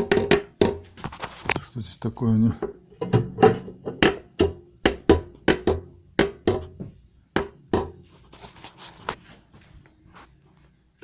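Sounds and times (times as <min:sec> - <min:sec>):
sharp hollow knocks: 0:00.0 - 0:01.0, 0:02.6 - 0:08.0.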